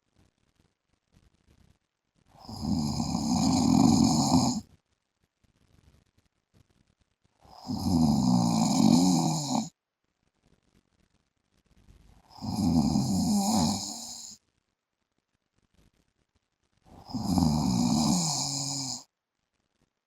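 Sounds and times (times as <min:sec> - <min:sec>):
man snoring: 0:02.4 - 0:04.6, 0:07.5 - 0:09.7, 0:12.3 - 0:14.4, 0:16.9 - 0:19.1.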